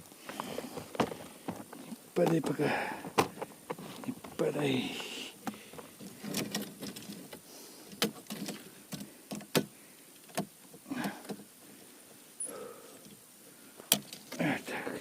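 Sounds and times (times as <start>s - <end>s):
gear clicks and knocks: 0.2s - 4.6s, 5.4s - 11.4s.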